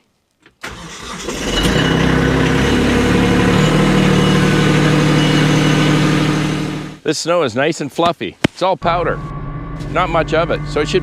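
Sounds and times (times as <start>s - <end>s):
tractor diesel engine running: 0.6s - 7.0s, 8.8s - 11.0s.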